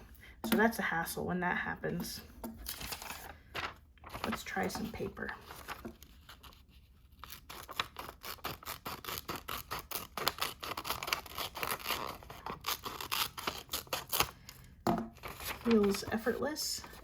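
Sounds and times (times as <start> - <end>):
scissors snipping paper: 7.2 - 14.4.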